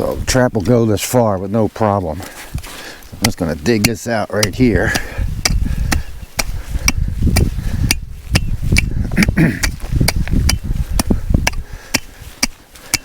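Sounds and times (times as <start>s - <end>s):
digging tool chopping into soil: 3.1s - 8.9s, 9.5s - 13.0s.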